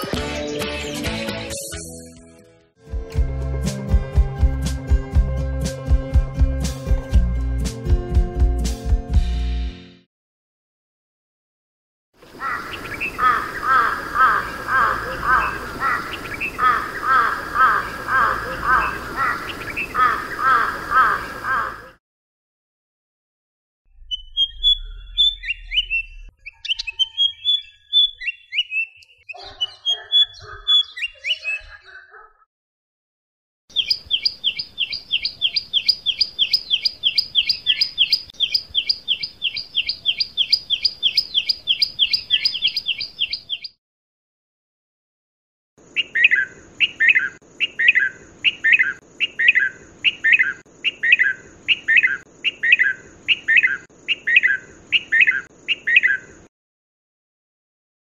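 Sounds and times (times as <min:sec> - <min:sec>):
bird chirps and calls: 0:12.3 - 0:21.9, 0:24.0 - 0:32.4, 0:33.7 - 0:43.8, 0:45.9 - 0:56.5
downward-sweeping bird calls: 0:12.3 - 0:22.0, 0:24.0 - 0:32.1, 0:33.7 - 0:43.8, 0:46.0 - 0:56.3.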